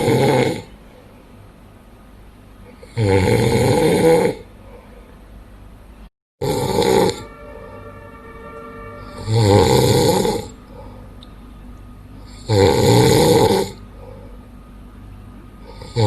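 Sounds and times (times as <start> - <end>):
man snoring loudly: 2.8 - 4.4, 12.3 - 13.7, 15.7 - 16.0
quiet breathing: 4.5 - 5.4, 13.8 - 14.6.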